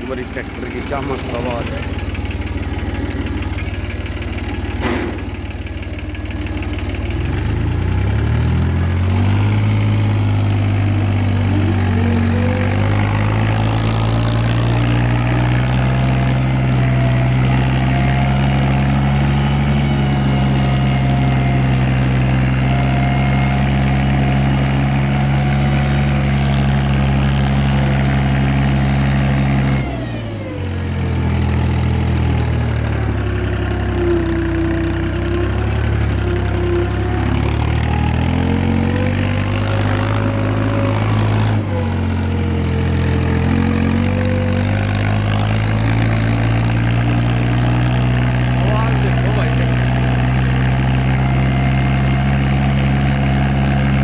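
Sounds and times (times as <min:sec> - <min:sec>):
tractor diesel engine revving: 0:00.0 - 0:54.0.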